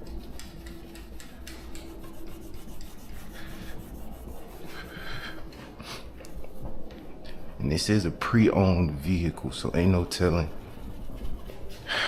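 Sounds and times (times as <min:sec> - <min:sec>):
cloth scrubbing car panel: 0:01.5 - 0:05.0.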